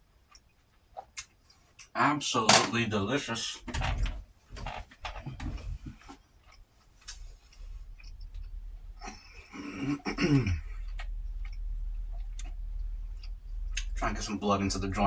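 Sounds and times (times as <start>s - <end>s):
low steady hum: 0.0s - 15.0s
man's throaty sound: 9.0s - 11.1s.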